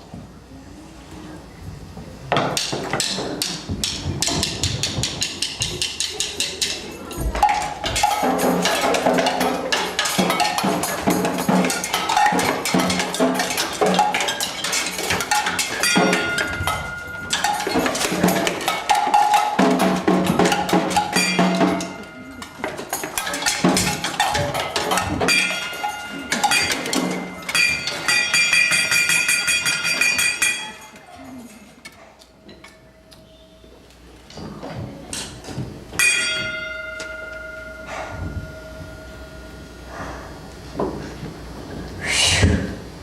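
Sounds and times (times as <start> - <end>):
music with fast percussion beat: 2.6 - 30.9.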